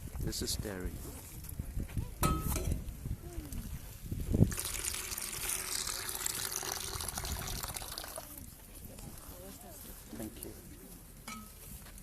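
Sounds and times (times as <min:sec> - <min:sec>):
water running and trickling: 0:04.5 - 0:08.5.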